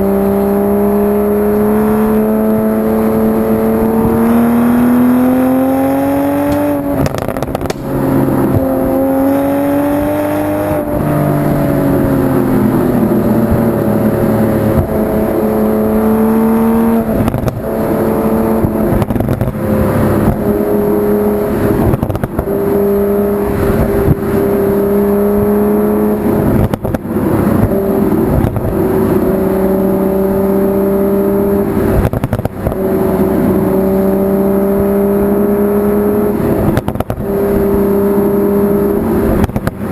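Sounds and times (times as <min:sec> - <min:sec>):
car engine running: 0:00.0 - 0:39.9
sharp exhaust pops: 0:06.3 - 0:09.2, 0:17.0 - 0:17.8, 0:18.5 - 0:20.6, 0:21.6 - 0:22.6, 0:26.4 - 0:28.8, 0:31.9 - 0:32.9, 0:36.6 - 0:37.3, 0:39.3 - 0:39.9.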